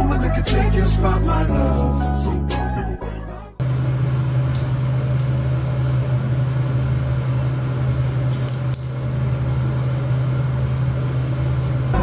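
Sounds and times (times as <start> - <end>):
light clinks: 3.6 - 12.0
machine humming: 3.6 - 12.0.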